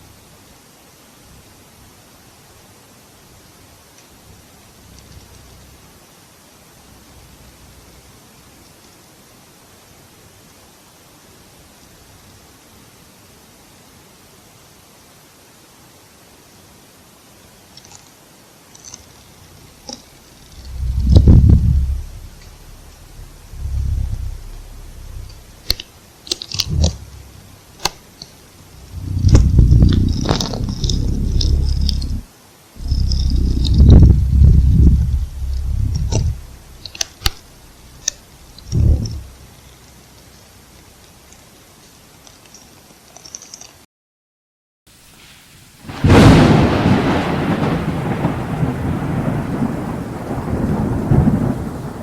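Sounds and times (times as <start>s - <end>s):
rain: 0.0s - 43.9s, 44.9s - 52.0s
animal growling: 19.5s - 25.8s, 26.4s - 27.9s, 28.6s - 32.2s, 32.8s - 40.0s
thunder crack and rumble: 19.5s - 25.8s, 26.5s - 28.0s, 28.6s - 32.2s, 32.8s - 40.2s, 45.9s - 52.0s
sharp clicks or snaps: 19.8s - 32.2s, 32.8s - 39.4s.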